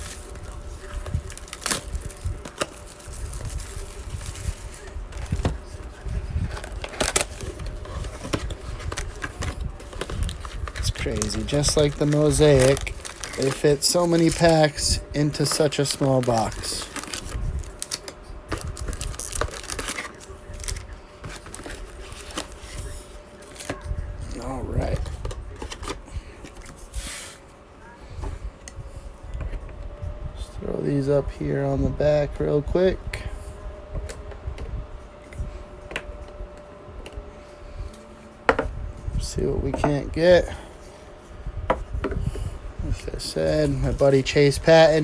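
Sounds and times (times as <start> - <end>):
foil wrappers crinkling: 0.0 - 26.7, 43.3 - 45.0
faint steady hum: 0.0 - 45.0.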